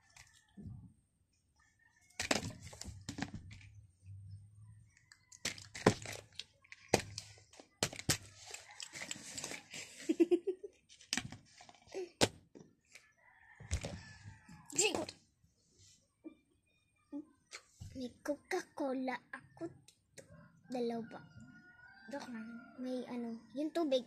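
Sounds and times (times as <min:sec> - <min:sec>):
giggle-like voice: 0:09.8 - 0:10.8.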